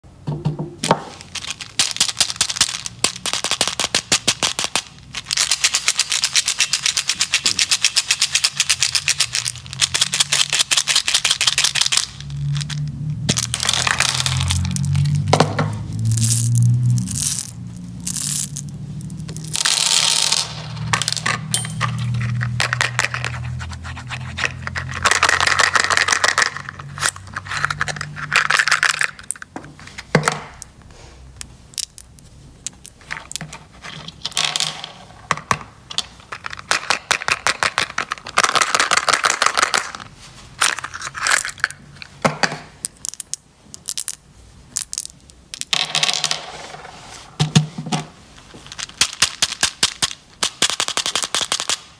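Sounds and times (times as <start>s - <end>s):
plastic wrappers crinkling: 1.0s - 15.3s.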